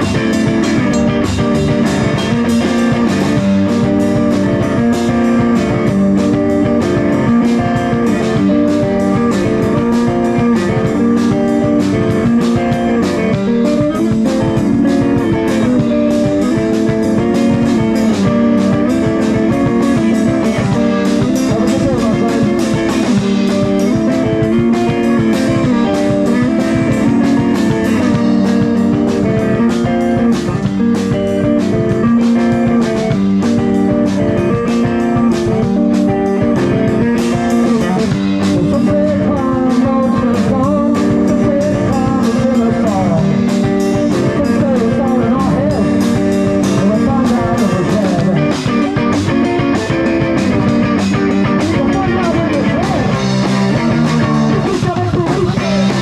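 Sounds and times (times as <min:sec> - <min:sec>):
blues-rock music: 0:00.0 - 0:56.0
person singing: 0:19.1 - 0:28.4, 0:37.2 - 0:56.0.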